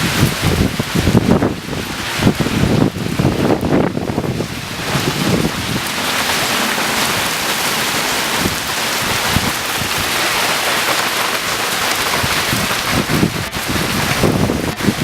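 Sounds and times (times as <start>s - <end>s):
hail and rain pelting down: 0.0s - 15.0s
wind buffeting microphone: 0.0s - 15.0s.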